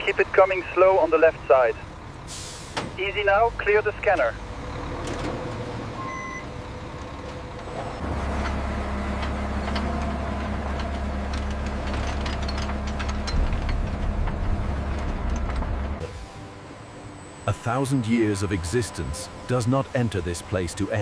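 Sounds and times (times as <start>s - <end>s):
knocks and clanks: 7.2s - 16.0s.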